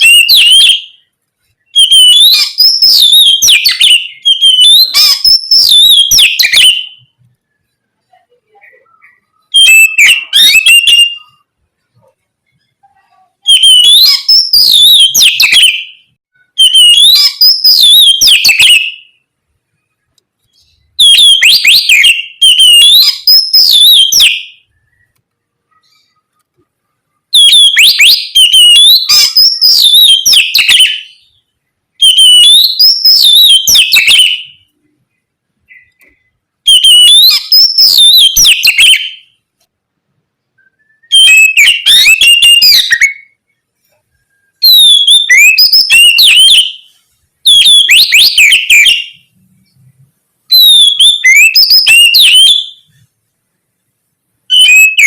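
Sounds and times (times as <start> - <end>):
bird singing whistled song: 0.0 - 7.8, 8.6 - 11.5, 13.4 - 19.2, 20.4 - 25.2, 27.3 - 31.4, 32.0 - 34.7, 35.7 - 39.4, 40.6 - 43.5, 44.2 - 49.3, 50.5 - 53.0, 54.5 - 55.0.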